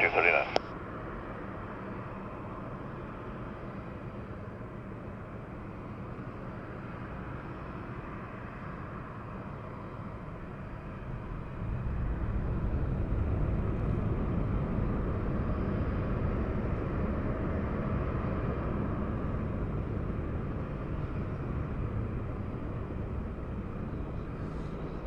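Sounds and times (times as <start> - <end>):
jet engines at takeoff power: 0.0 - 25.0.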